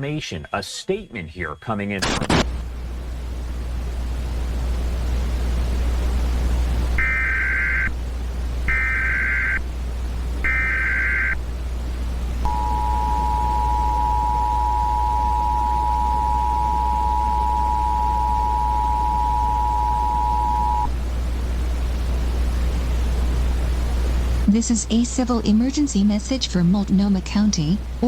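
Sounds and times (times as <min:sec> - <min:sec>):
low hum: 0:02.0 - 0:28.0
data burst tones: 0:07.0 - 0:07.9, 0:08.7 - 0:09.6, 0:10.5 - 0:11.4, 0:12.5 - 0:20.9
two-tone attention signal: 0:12.5 - 0:20.9.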